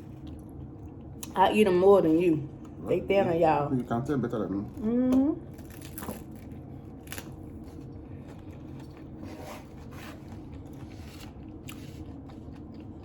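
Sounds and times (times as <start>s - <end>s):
steady low hum: 0.0s - 13.0s
crunching taco shells: 5.5s - 9.2s, 10.3s - 13.0s.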